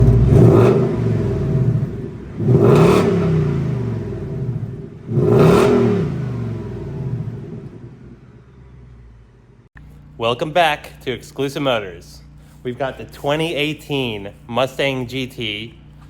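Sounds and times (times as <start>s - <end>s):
car engine revving: 0.0s - 10.0s.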